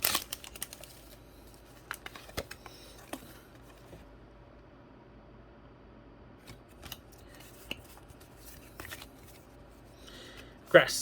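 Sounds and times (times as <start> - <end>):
card pack crinkling: 0.0 - 4.0, 6.5 - 9.6.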